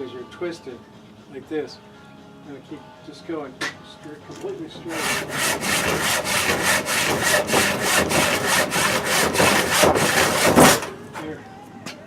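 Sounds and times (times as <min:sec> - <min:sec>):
hand saw cutting wood: 0:04.9 - 0:11.0.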